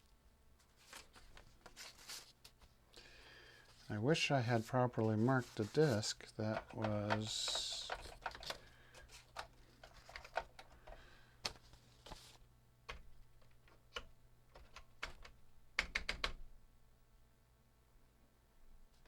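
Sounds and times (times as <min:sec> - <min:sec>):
computer keyboard typing: 0:06.5 - 0:11.6, 0:12.9 - 0:16.4.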